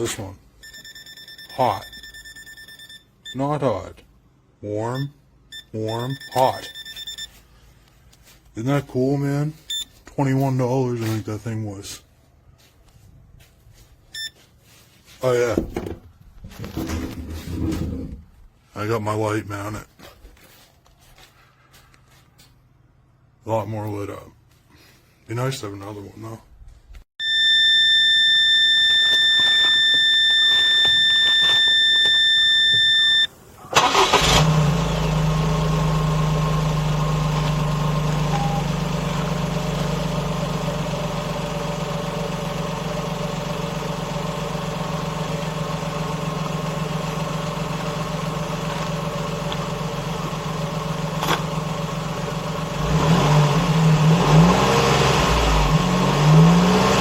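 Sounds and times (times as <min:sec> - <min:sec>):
steady electronic beep: 0:00.6 - 0:03.4, 0:04.9 - 0:07.4, 0:27.2 - 0:33.3
engine cranking and starting: 0:33.7 - 0:39.0
engine revving: 0:33.8 - 0:42.0, 0:49.6 - 0:57.0
engine idling: 0:33.8 - 0:52.9.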